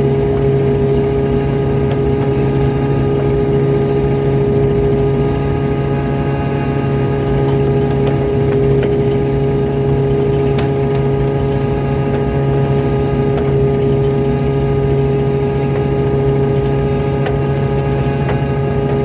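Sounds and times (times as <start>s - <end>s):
boat engine droning: 0.0s - 19.0s.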